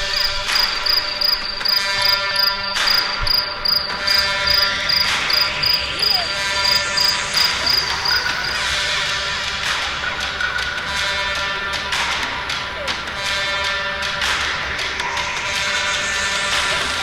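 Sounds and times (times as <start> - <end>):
high-pitched ticking beat: 0.0 - 8.8
sustained music chords: 0.0 - 17.0.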